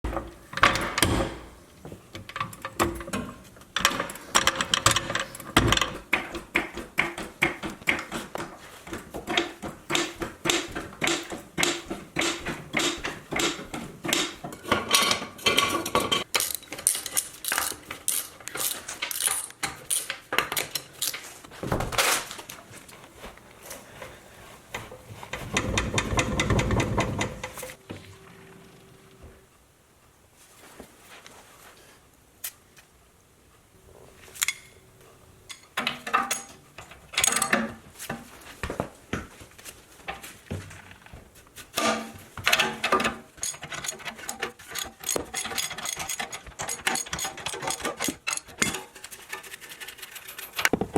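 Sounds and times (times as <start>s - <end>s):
metal tools clinking: 12.7s - 21.3s, 41.8s - 49.0s.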